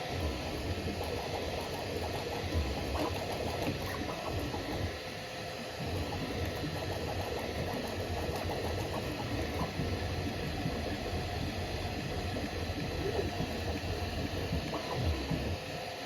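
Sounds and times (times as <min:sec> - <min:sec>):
printer fan hiss: 0:00.0 - 0:16.0.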